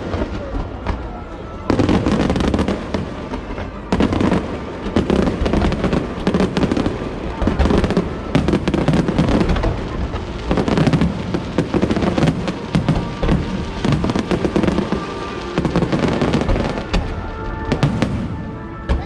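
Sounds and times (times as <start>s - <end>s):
fireworks booming and crackling: 0.0s - 19.0s.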